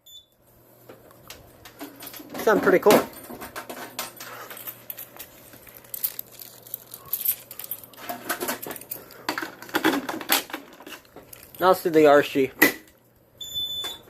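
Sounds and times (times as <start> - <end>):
small hardware clicking and rattling: 1.6 - 12.1.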